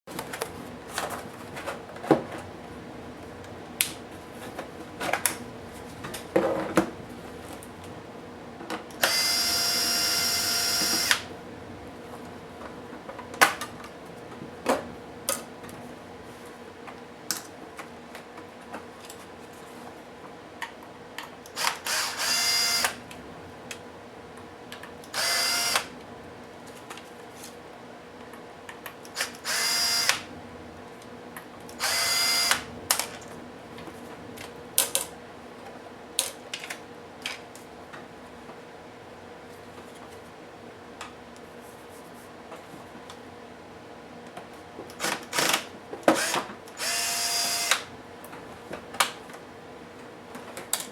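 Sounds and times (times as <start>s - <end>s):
electric screwdriver whirring: 9.0s - 11.3s, 21.5s - 23.0s, 25.1s - 25.9s, 29.2s - 30.2s, 31.8s - 32.7s, 45.0s - 47.9s.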